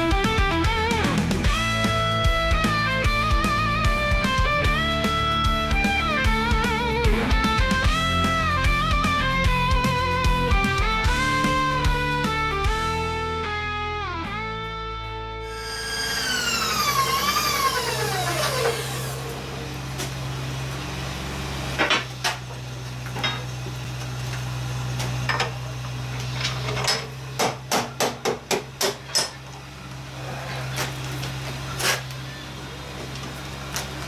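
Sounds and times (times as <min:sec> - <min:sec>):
low machine hum: 0:15.5 - 0:27.5.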